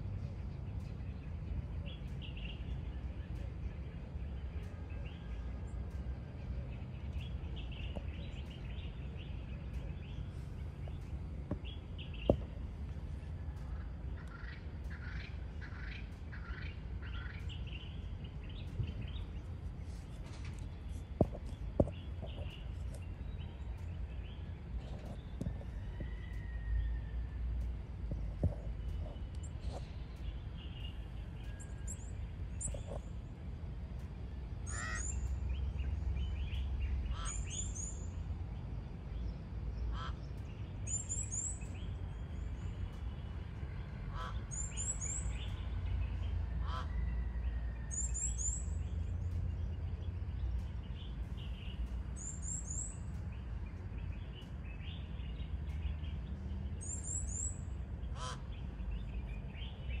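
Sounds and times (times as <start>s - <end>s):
steady low rumble: 0.0s - 60.0s.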